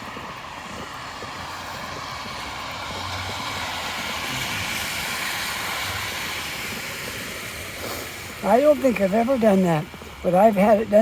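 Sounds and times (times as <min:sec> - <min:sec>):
engine hum: 0:00.0 - 0:11.0
tyre hiss: 0:07.1 - 0:08.4.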